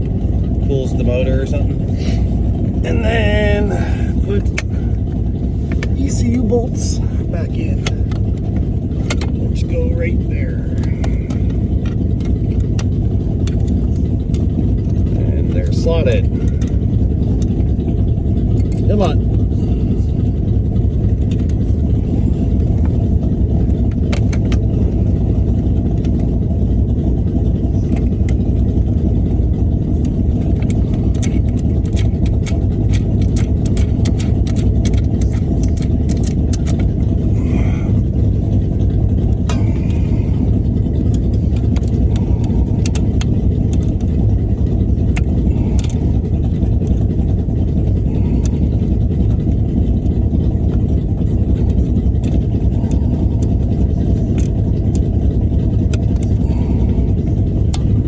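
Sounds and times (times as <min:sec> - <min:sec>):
low engine-like rumble: 0:00.0 - 0:58.0
light clicks and taps: 0:30.0 - 0:37.1, 0:40.9 - 0:47.2, 0:51.5 - 0:58.0.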